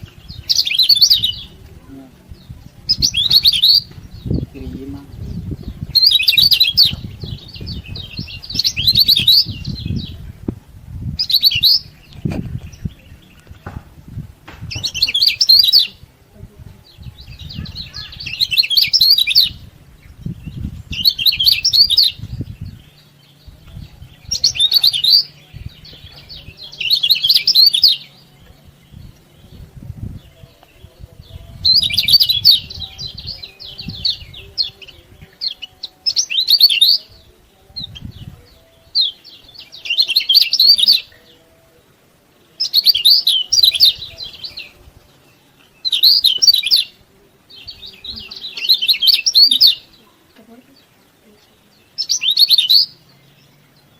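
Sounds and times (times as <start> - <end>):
bird fast high chirping: 2.8 - 10.2, 17.1 - 23.0.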